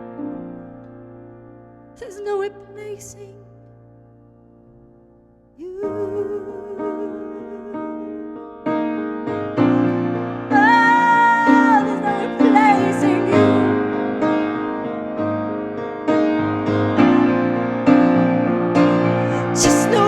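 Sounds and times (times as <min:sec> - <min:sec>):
piano chords: 0:00.0 - 0:20.0
wordless singing: 0:19.3 - 0:20.0.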